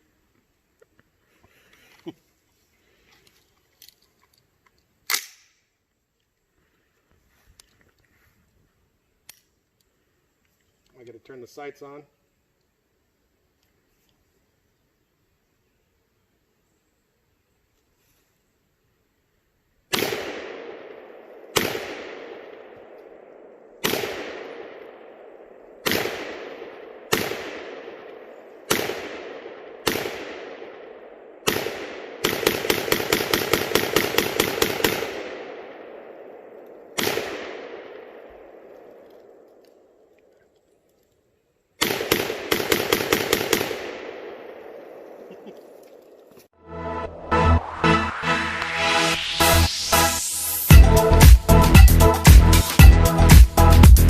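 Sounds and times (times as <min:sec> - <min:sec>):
rapid rifle fire: 0:19.9 - 0:38.6, 0:41.8 - 0:45.2
rifle shots echoing: 0:19.9 - 0:40.1, 0:41.8 - 0:46.2.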